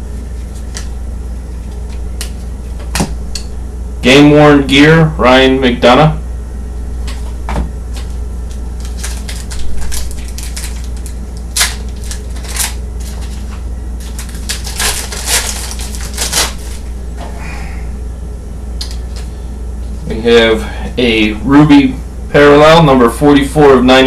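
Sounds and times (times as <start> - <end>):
steady low hum: 0.0 - 24.0
card packaging crinkling: 7.9 - 16.9.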